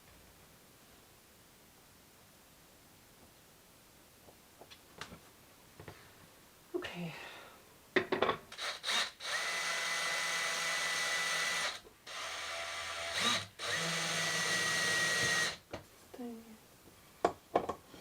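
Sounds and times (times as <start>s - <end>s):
power drill whining: 8.5s - 15.6s.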